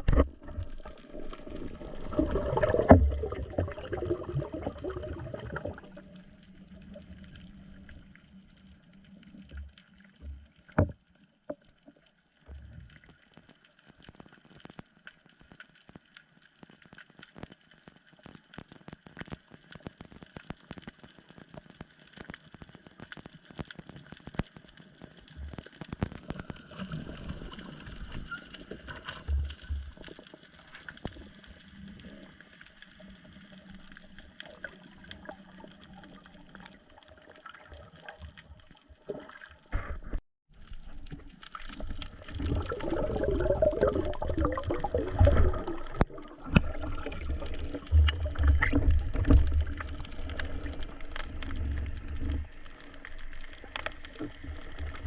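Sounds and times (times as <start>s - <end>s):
water sloshing and gurgling: 0.0s - 14.9s, 24.1s - 55.0s.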